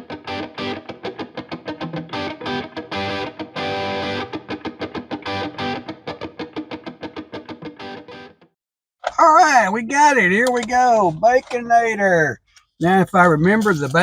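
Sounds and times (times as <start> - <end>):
guitar picking fast notes: 0.0 - 8.3.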